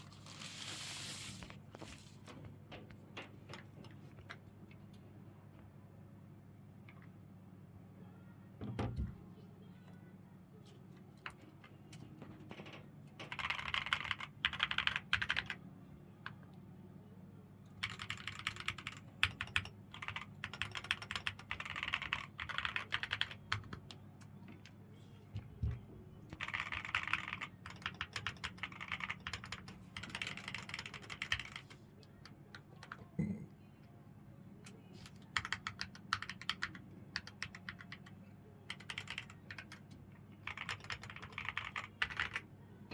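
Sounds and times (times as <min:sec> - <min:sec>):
mechanical keyboard typing: 0:12.7 - 0:15.6, 0:17.7 - 0:24.0, 0:26.3 - 0:33.0, 0:35.0 - 0:42.4.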